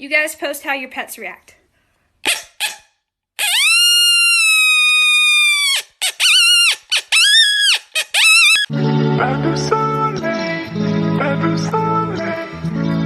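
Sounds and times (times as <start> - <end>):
coyote yipping: 3.4 - 8.7.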